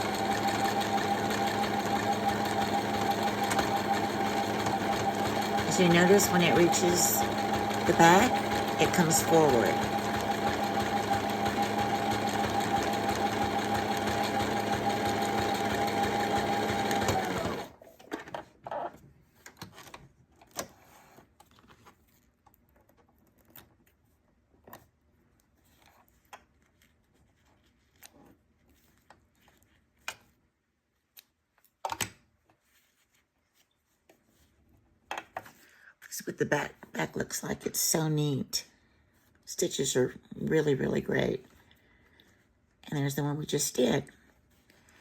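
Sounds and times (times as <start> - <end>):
sewing machine motor whine: 0.0 - 17.7.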